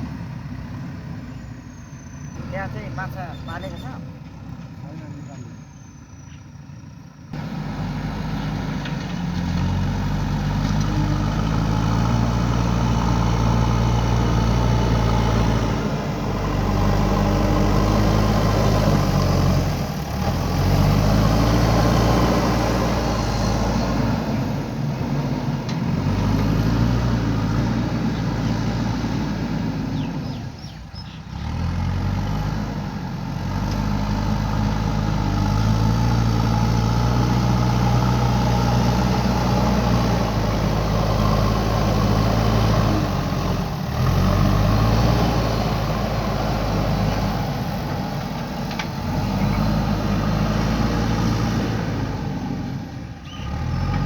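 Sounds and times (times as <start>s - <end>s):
diesel engine running under load: 0.0s - 54.0s.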